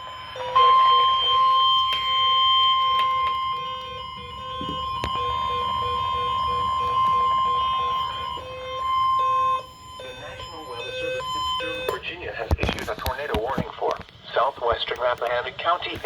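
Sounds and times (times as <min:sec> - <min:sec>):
low rapid beeps: 0:00.0 - 0:16.0
steady alarm tone: 0:00.0 - 0:16.0.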